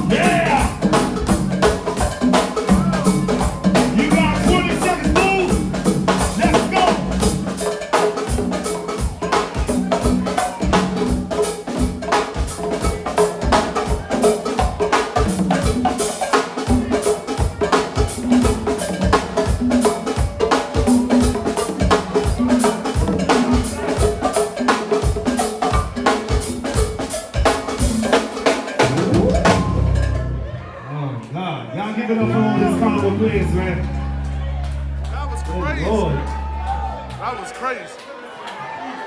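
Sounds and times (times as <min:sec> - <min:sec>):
drum kit played fast: 0:00.0 - 0:30.6
held low pitched notes: 0:32.2 - 0:37.1.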